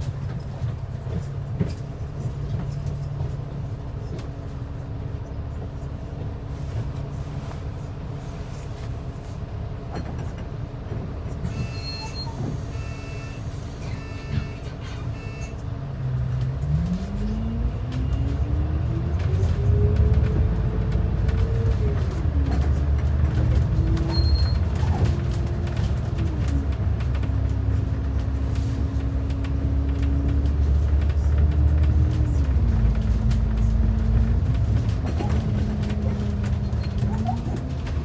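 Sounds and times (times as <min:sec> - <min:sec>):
bus engine running: 0:00.0 - 0:38.0
short beeps: 0:11.6 - 0:15.6.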